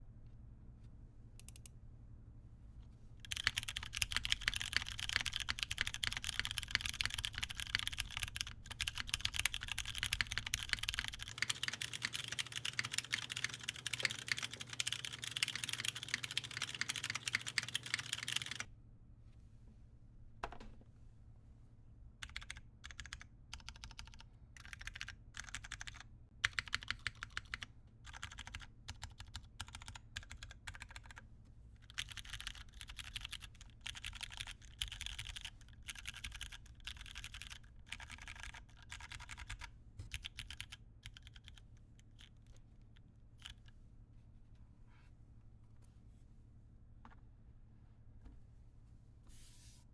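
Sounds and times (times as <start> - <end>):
mechanical keyboard typing: 3.2 - 18.7, 22.2 - 31.2, 31.9 - 41.6.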